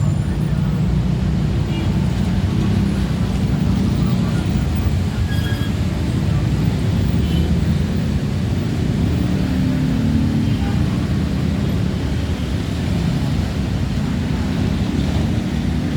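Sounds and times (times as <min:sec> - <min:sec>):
low rumble of engines: 0:00.0 - 0:15.9.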